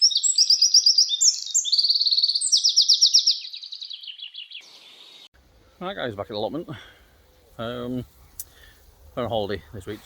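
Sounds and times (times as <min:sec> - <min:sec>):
songbird trilling: 0:00.0 - 0:05.3.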